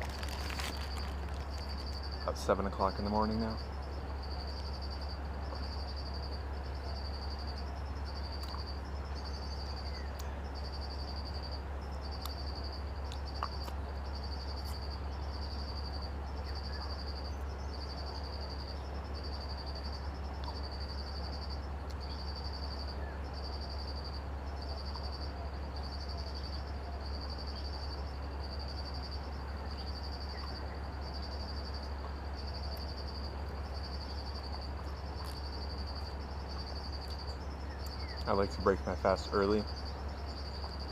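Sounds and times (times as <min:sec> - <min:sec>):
insect calling in high pulses: 0:00.0 - 0:25.3
steady low hum: 0:00.0 - 0:40.9.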